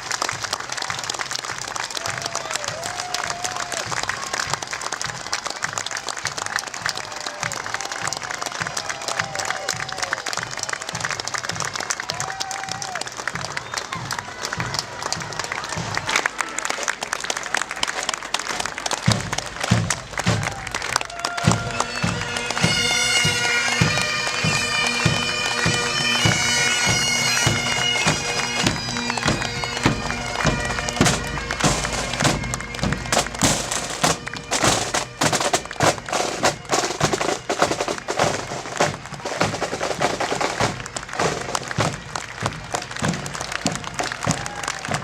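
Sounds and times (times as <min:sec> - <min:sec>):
drum beating march rhythm: 0:00.0 - 0:16.3, 0:17.8 - 0:45.0
crowd applause: 0:00.0 - 0:45.0
bagpipes playing over drone: 0:21.5 - 0:44.3.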